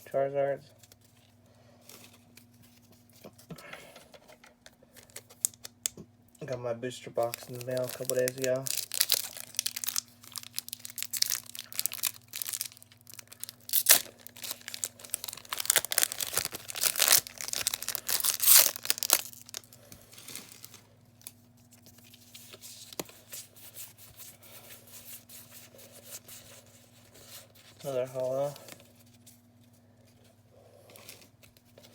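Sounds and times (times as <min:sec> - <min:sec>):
foil wrapper tearing and crinkling: 0:07.2 - 0:23.8
cards rustling: 0:07.2 - 0:30.2.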